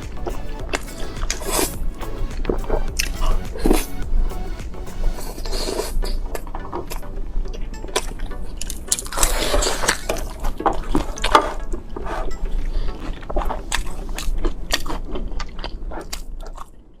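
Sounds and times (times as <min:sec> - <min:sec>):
person chewing: 0:08.0 - 0:16.7.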